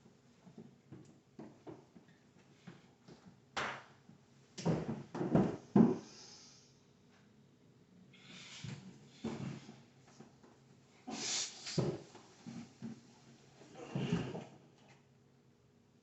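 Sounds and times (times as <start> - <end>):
faint hiss: 6.0 - 6.8, 11.0 - 12.6.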